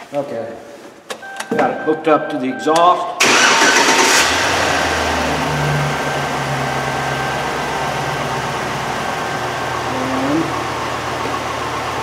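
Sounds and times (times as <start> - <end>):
car engine idling: 3.2 - 12.0.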